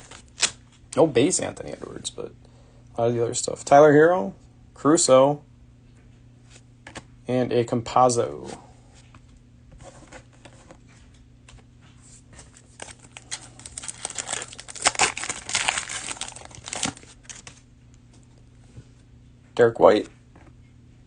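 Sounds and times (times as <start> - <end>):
cellophane wrapper crinkling: 12.4 - 17.6.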